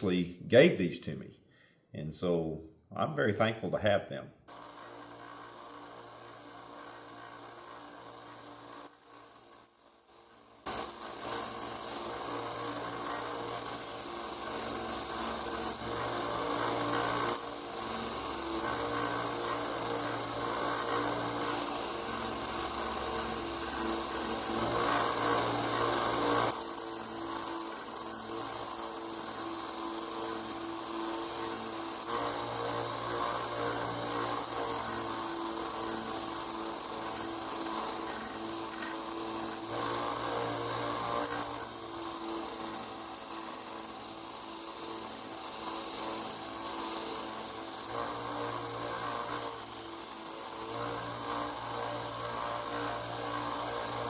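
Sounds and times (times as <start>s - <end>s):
bench sander running: 4.5s - 54.0s
hissing grind on sanding belt: 8.6s - 48.0s.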